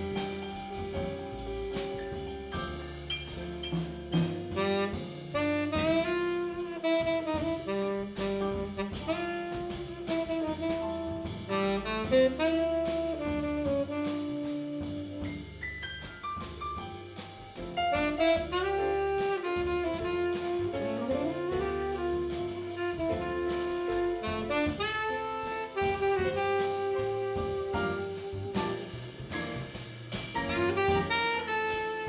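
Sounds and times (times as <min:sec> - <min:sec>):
jazz quartet playing: 0:00.0 - 0:32.0
saxophone melody: 0:04.6 - 0:10.8, 0:11.5 - 0:15.1, 0:18.0 - 0:28.8, 0:30.5 - 0:32.0.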